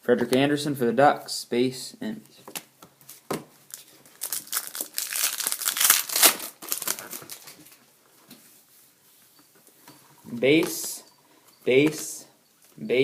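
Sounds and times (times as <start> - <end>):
plastic wrapper crinkling: 3.6 - 7.8.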